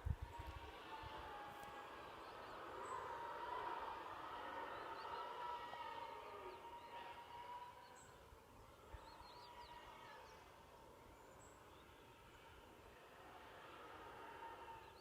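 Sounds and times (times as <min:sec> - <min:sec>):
distant siren-like drone: 0:00.0 - 0:15.0.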